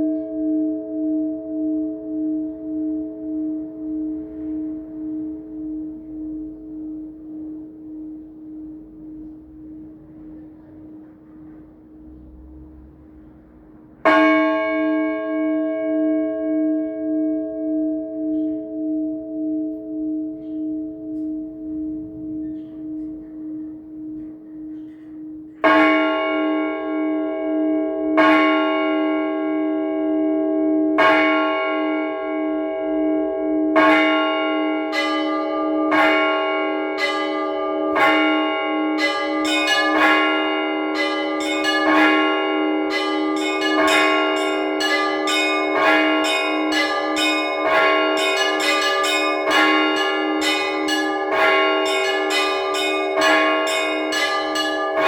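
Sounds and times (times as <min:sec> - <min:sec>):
large church bell striking: 0:00.0 - 0:55.0
smaller bells ringing quickly: 0:34.9 - 0:55.0.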